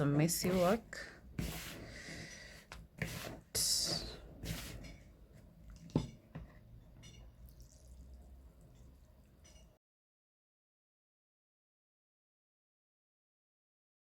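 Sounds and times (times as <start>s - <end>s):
hands kneading sticky dough: 0.0s - 6.0s.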